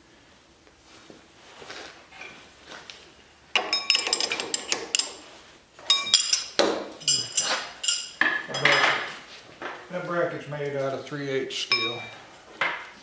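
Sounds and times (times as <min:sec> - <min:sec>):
metal tools clattering: 0:03.6 - 0:09.9, 0:11.7 - 0:12.2.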